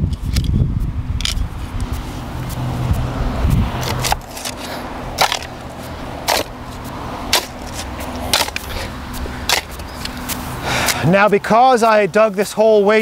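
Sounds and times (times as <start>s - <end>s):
shovel scraping soil: 1.2s - 11.2s
shovel blade clicks: 3.8s - 5.6s, 7.3s - 8.9s.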